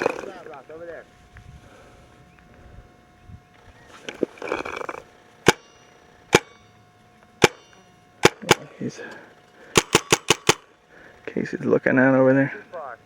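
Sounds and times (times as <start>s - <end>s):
paintball marker firing: 4.1s - 6.6s, 7.3s - 8.8s, 9.7s - 10.7s.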